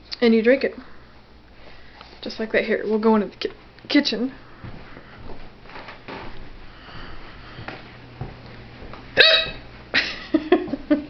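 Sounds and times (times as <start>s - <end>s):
woman hiccuping: 9.2s - 9.6s.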